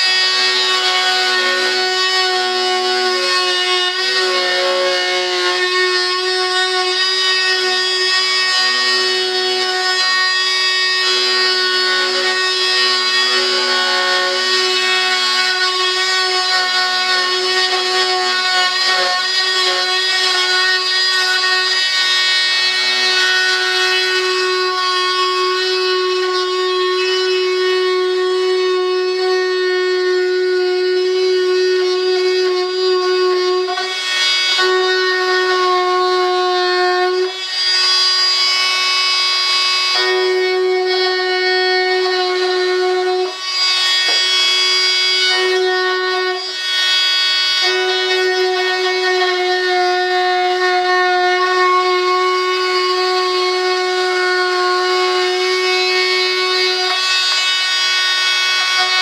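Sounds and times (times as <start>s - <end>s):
rotary tool whining: 0.0s - 28.2s
cutter grinding into material: 0.0s - 59.0s.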